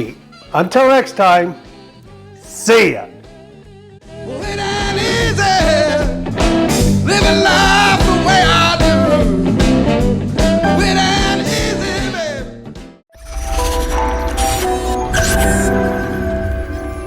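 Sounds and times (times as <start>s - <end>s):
guitar: 0.0s - 17.0s
person singing: 4.0s - 6.2s, 7.0s - 9.4s, 10.4s - 12.6s
bass line: 4.1s - 12.6s.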